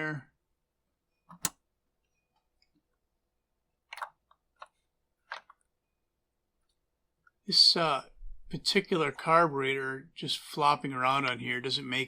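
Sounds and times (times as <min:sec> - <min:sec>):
small parts clicking and knocking: 0:03.9 - 0:05.7.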